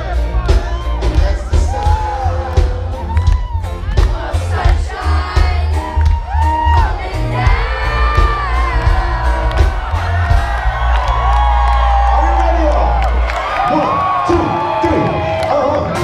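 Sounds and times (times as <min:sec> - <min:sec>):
person singing lead vocal: 0:00.0 - 0:09.7
live band playing pop-reggae: 0:00.0 - 0:11.3
crowd whooping and shouting: 0:00.0 - 0:16.0.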